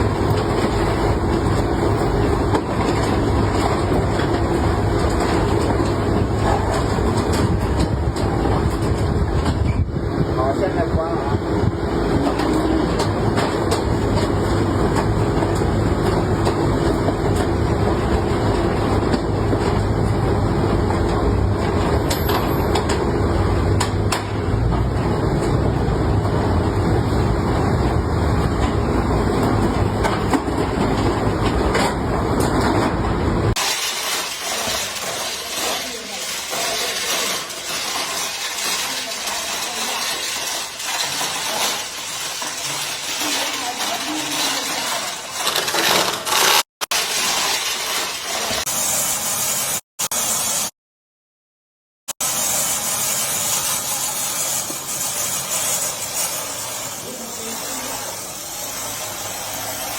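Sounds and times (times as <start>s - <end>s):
rolling steel door rattling: 0.0s - 10.3s, 11.5s - 48.7s.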